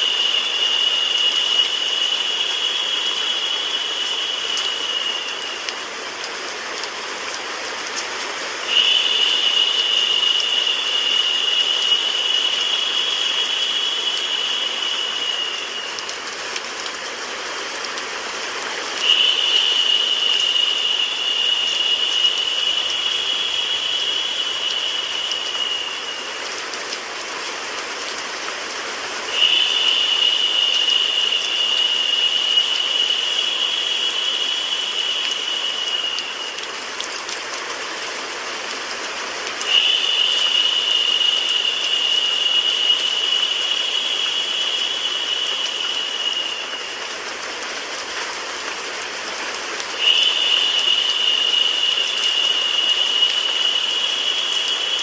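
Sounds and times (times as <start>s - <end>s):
bright high hiss: 0.0s - 5.8s, 8.6s - 16.5s, 19.0s - 26.7s, 29.2s - 36.8s, 39.6s - 47.4s, 49.9s - 55.0s
rain hiss: 0.0s - 55.0s.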